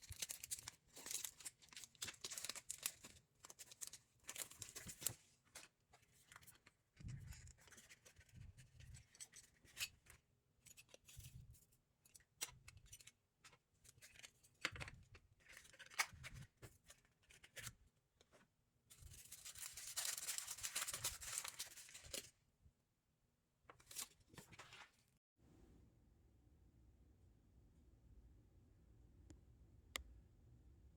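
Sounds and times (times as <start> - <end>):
packaging crinkling or tearing: 0.0 - 5.2, 19.2 - 22.2
plastic packaging clicks and rustles: 0.0 - 11.3, 19.0 - 22.3.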